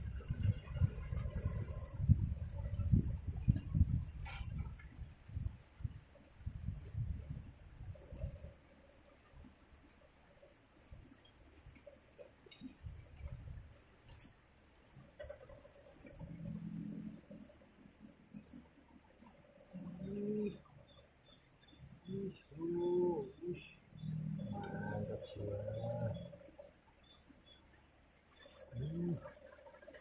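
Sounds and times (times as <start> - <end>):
low rumbles on microphone: 0.0 - 8.4.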